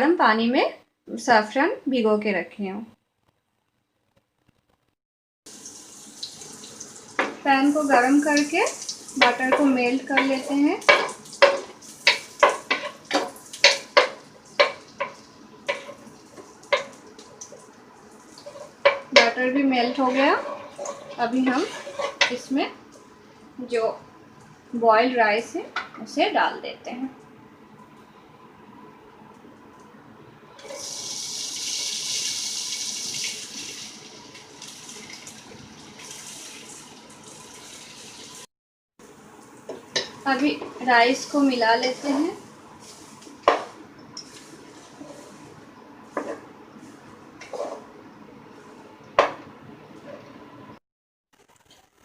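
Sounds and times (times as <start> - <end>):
rice sizzling in butter: 5.5 - 22.4, 30.6 - 38.4, 39.6 - 47.9
utensil knocking and scraping pan: 9.2 - 16.1, 18.4 - 22.5, 46.1 - 46.5, 47.4 - 47.9.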